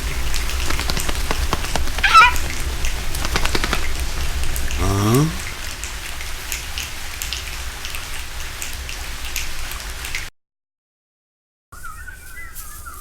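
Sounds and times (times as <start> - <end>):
rain pattering: 0.0 - 10.3
warbling bird-like whistles: 0.6 - 2.6.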